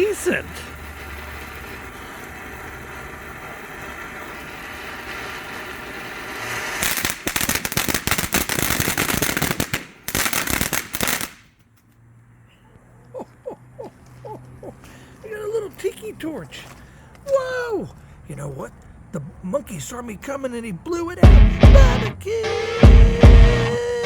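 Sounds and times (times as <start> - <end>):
firework fountain hissing: 0.0 - 11.5
rapid firework crackling: 0.0 - 11.6.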